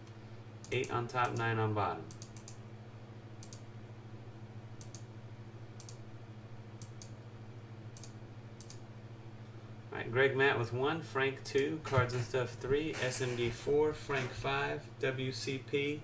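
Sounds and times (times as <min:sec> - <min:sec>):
steady low hum: 0:00.0 - 0:16.0
sharp clicks: 0:02.1 - 0:02.6, 0:03.4 - 0:03.6, 0:04.8 - 0:05.1, 0:05.8 - 0:06.0, 0:08.0 - 0:08.8.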